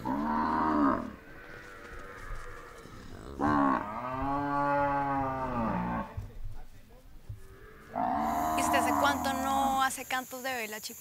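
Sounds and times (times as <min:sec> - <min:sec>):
cow mooing: 0:00.0 - 0:06.2, 0:07.5 - 0:09.8.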